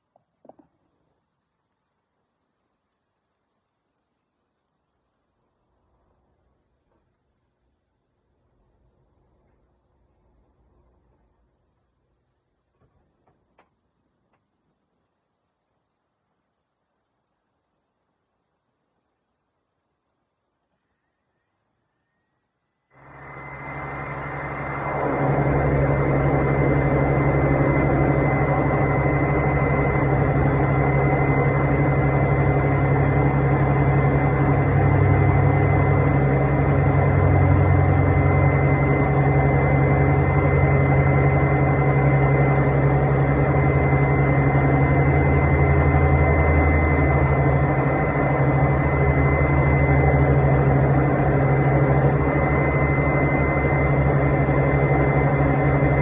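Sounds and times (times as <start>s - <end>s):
thin high whine: 20.8s - 56.0s
air-conditioning fan hum: 22.9s - 56.0s.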